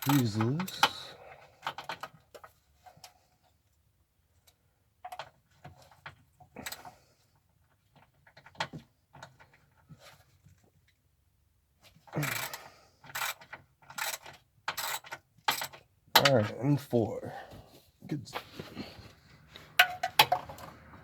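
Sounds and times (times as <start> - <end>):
ratchet clicking: 0.0 - 1.0, 12.2 - 15.8.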